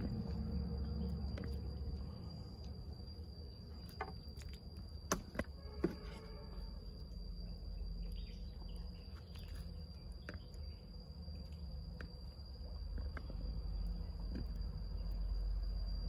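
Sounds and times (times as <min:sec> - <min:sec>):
low rumble: 0:00.0 - 0:03.9
crickets droning: 0:00.0 - 0:16.0.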